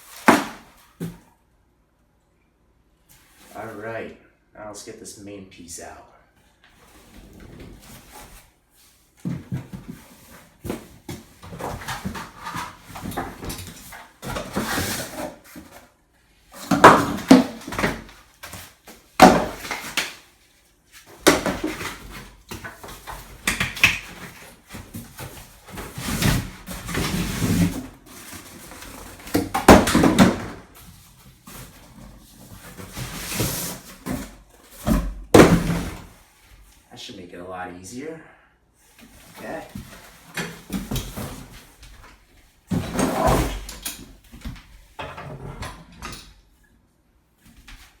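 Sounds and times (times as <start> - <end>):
cardboard rustling and scraping: 6.7 - 15.9, 16.5 - 36.8, 38.8 - 45.6.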